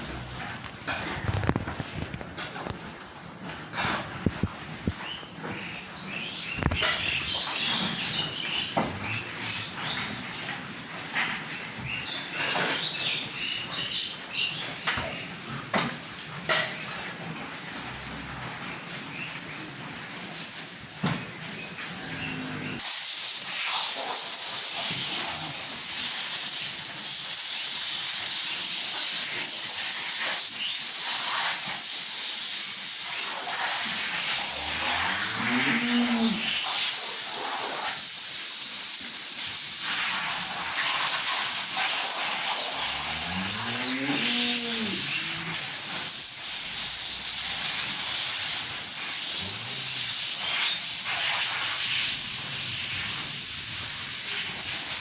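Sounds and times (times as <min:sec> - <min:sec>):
steady loud hiss: 0:06.2 - 0:55.0
cattle mooing: 0:22.0 - 0:22.8, 0:34.4 - 0:36.7, 0:42.7 - 0:46.1, 0:49.2 - 0:50.8.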